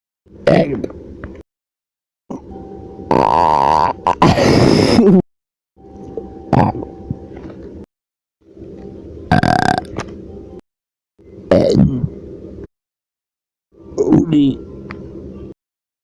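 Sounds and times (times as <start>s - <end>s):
steady background hum: 0.3s - 1.4s, 2.3s - 5.2s, 5.8s - 10.6s, 11.2s - 12.7s, 13.8s - 15.6s
person burping: 3.1s - 5.2s, 6.5s - 6.9s, 9.3s - 9.9s, 11.5s - 12.1s.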